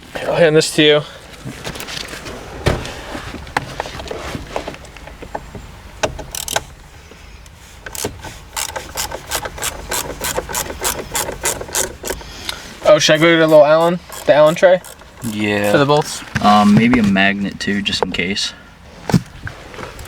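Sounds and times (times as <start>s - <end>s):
ratchet clicking: 6.0s - 6.7s, 7.9s - 16.3s.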